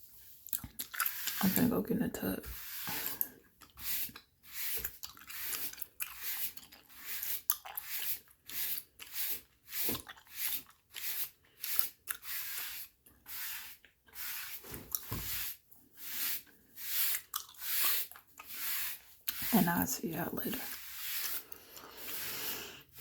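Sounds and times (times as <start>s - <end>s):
wet gum chewing: 0.4s - 1.4s, 2.9s - 12.3s, 16.4s - 19.4s.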